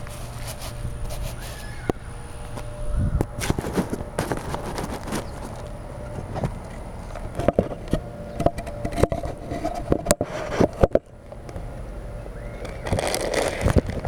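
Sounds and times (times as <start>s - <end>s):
birds pecking at seed in a feeder: 0.0s - 11.8s, 12.4s - 14.0s
sharp taps and scrapes: 7.2s - 11.6s.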